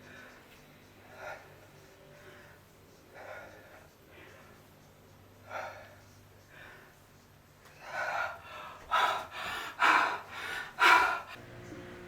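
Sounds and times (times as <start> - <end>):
person breathing hard: 0.0 - 11.4.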